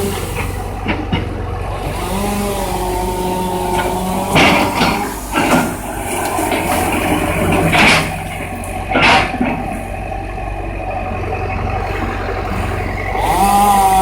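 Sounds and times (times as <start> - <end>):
excavator engine running: 0.0 - 14.0.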